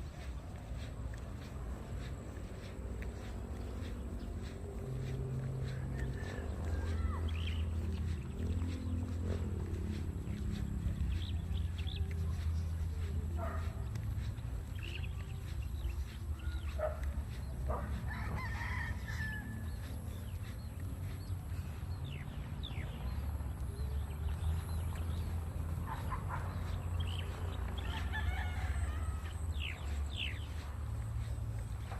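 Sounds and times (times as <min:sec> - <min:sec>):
steady low rumble: 0:00.0 - 0:31.9
rooster crowing: 0:05.7 - 0:07.6, 0:18.0 - 0:19.9, 0:27.7 - 0:30.3.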